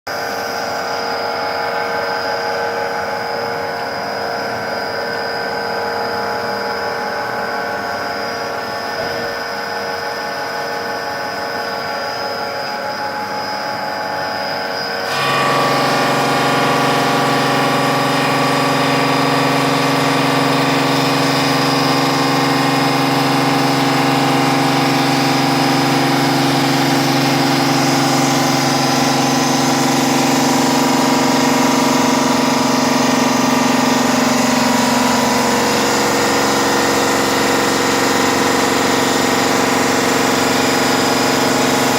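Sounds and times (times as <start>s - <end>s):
stone-cutting machine humming: 0.1s - 41.9s
deep motor hum: 15.0s - 41.9s.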